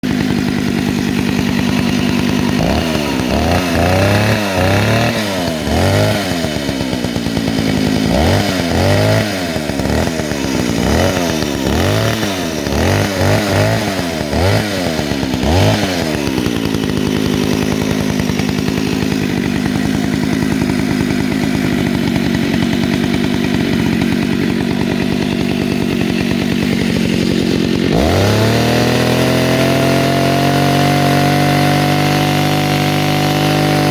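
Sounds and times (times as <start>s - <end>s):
chainsaw idling and revving: 0.0s - 33.9s.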